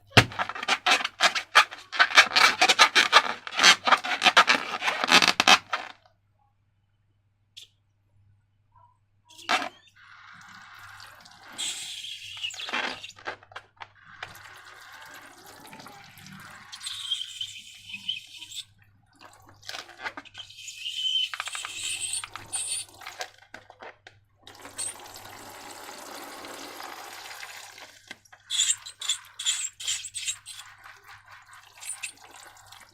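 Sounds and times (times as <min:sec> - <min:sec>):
slime squelching: 0:28.4 - 0:32.9.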